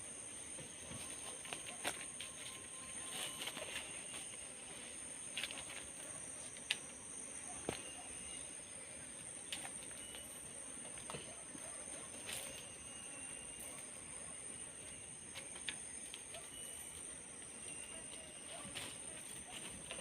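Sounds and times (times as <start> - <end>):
high-pitched insect drone: 0.1 - 20.0.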